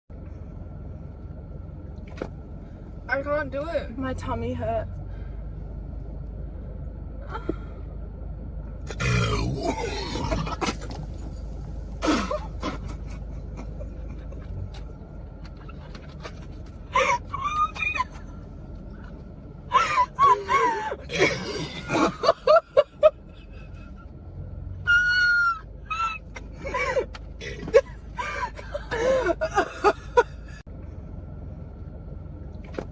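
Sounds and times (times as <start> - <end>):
women laughing hysterically: 12.0 - 14.5, 16.9 - 18.2, 19.7 - 24.0, 25.0 - 30.6.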